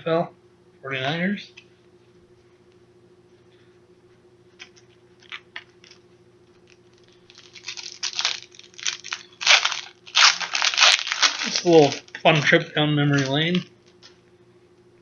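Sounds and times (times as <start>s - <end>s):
card pack wrapper crinkling: 6.6s - 14.1s.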